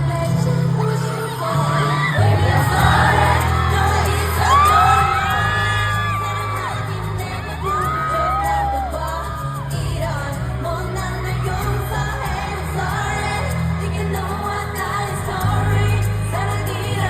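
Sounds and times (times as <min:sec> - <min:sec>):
pop ballad over sound system: 0:00.0 - 0:17.0.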